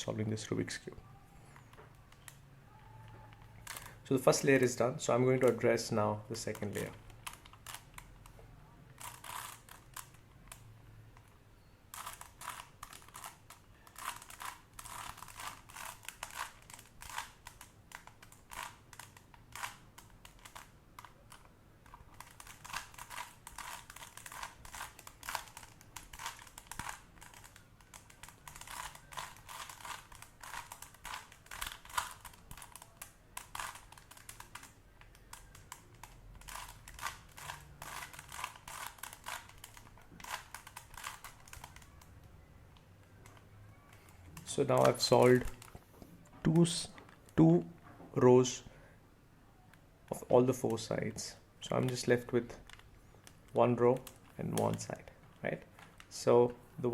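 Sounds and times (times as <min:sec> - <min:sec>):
puzzle cube clicking: 0:05.4 - 0:11.3, 0:11.9 - 0:42.4.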